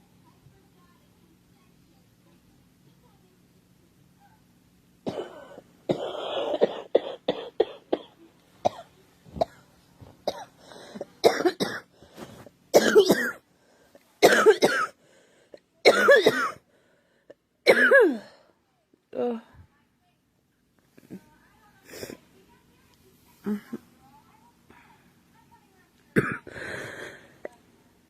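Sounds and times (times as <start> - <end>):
girl coughing: 5.1 - 11.9, 12.7 - 13.4, 14.2 - 15.0, 15.8 - 16.6, 17.7 - 18.4, 23.4 - 23.8, 26.1 - 27.5.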